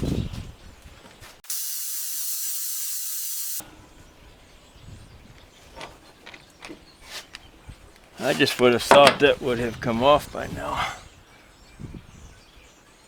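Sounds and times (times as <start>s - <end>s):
compressed air hissing: 1.4s - 3.6s
tool clicks and knocks: 8.9s - 9.3s.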